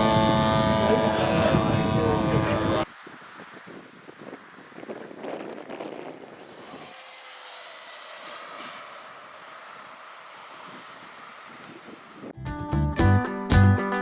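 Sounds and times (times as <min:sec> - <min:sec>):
model airplane motor whining: 0:06.4 - 0:12.3
music: 0:12.4 - 0:14.0.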